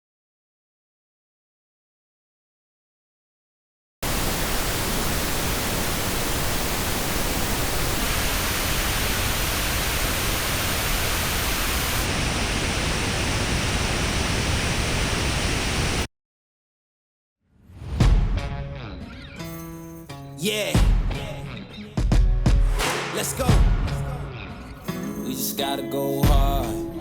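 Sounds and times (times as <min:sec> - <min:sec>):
pink noise test signal: 0:04.0 - 0:16.1.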